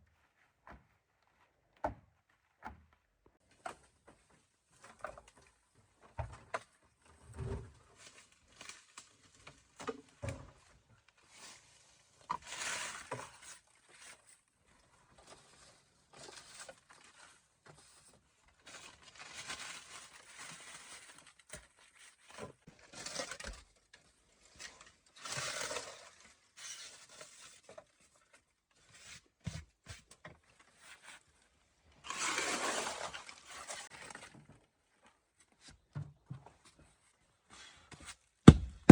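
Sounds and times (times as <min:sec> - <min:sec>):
dull knocks: 0:38.5 - 0:38.9.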